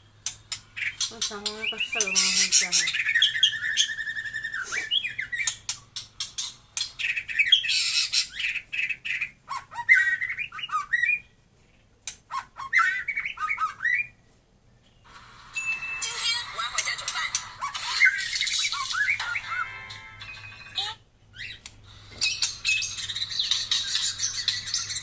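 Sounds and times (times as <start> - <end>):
bird singing whistles and trills: 0.8 - 11.3, 12.4 - 14.2, 18.0 - 19.6.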